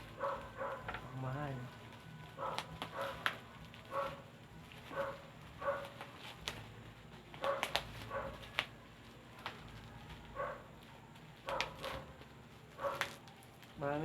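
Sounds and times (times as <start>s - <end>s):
dog barking: 0.1s - 1.0s, 2.4s - 6.1s, 7.4s - 8.6s, 10.4s - 10.7s, 11.4s - 12.1s, 12.8s - 13.2s.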